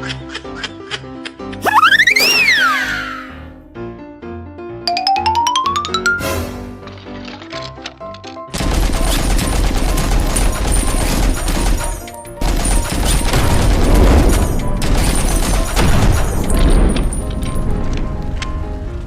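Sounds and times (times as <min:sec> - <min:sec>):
rapid bangs and explosions: 0:08.6 - 0:18.1.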